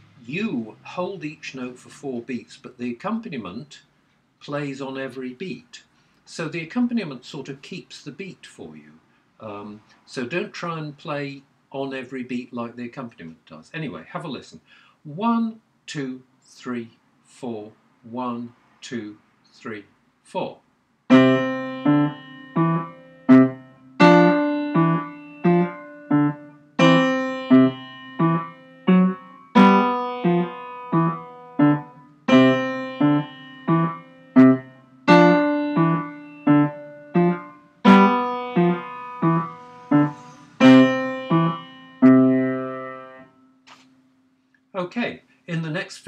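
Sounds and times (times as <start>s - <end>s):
piano duet: 21.1s - 43.3s.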